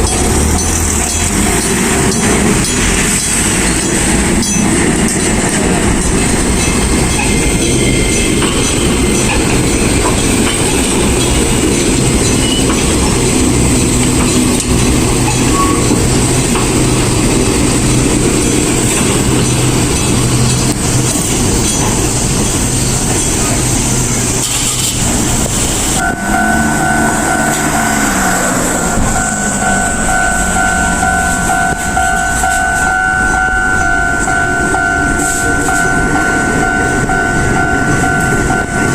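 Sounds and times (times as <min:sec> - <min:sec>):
clacking over rail joints: 0:00.0 - 0:38.9
train wheels rumbling: 0:00.0 - 0:38.9
steady pitched tone: 0:25.1 - 0:38.9.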